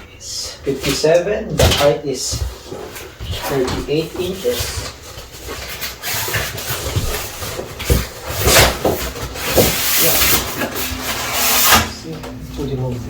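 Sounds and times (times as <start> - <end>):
packaging rustling and scraping: 2.4 - 12.0.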